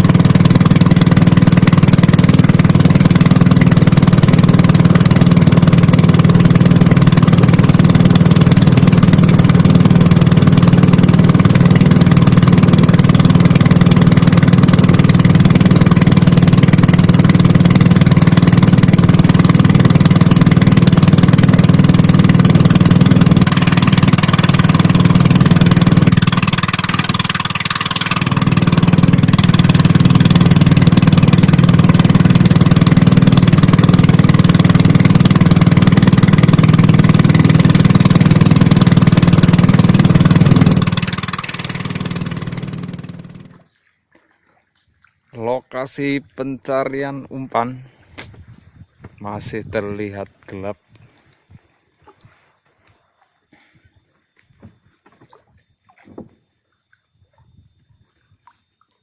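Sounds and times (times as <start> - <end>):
low engine drone: 0.0 - 43.8, 45.4 - 48.4.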